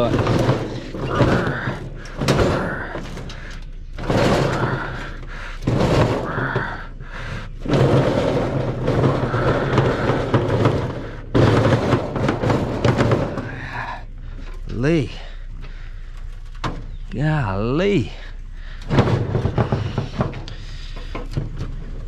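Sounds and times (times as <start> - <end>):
heavy scrap scraping and banging: 0.0 - 22.0.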